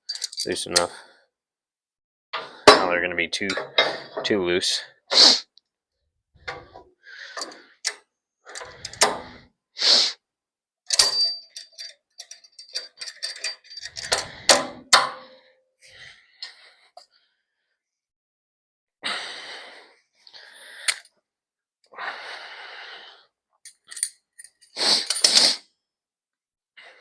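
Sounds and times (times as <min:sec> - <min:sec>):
steel parts clinking and knocking: 0:00.0 - 0:00.9, 0:02.4 - 0:04.4, 0:06.4 - 0:06.8, 0:07.4 - 0:09.4, 0:10.9 - 0:15.4, 0:23.6 - 0:25.5
metallic ring: 0:10.9 - 0:15.4.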